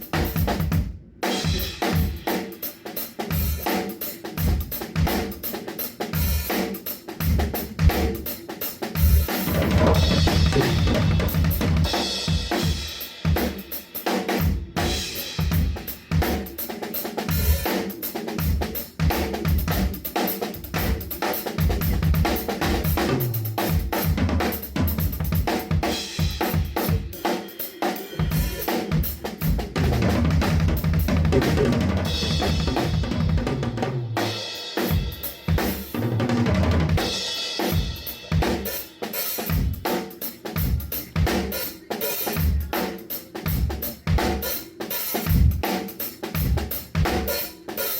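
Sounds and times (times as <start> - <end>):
drum kit groove: 0.0 - 47.9
low bass line: 9.5 - 11.2.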